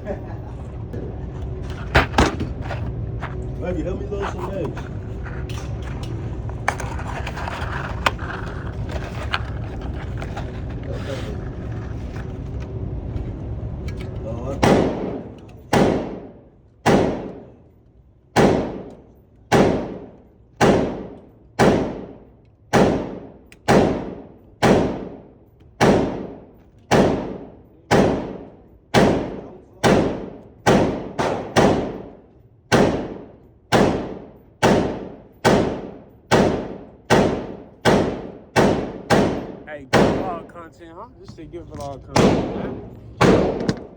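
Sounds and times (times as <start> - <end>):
echoing gunshots: 14.6 - 17.6, 18.3 - 40.6, 42.1 - 43.9.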